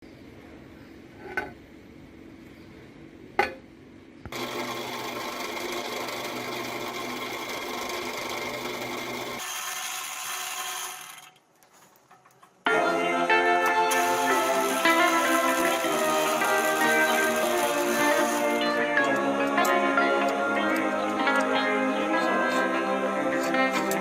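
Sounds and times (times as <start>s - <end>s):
high whirr: 4.3s - 11.4s, 13.6s - 19.6s
machine humming: 4.3s - 11.4s, 12.7s - 24.0s.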